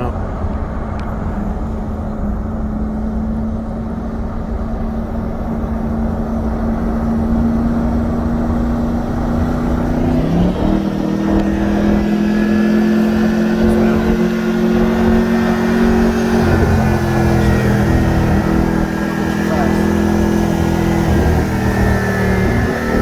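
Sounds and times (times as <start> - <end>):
road and tyre rumble: 0.0 - 23.0
steady hum: 0.0 - 23.0
higher hum: 8.1 - 23.0.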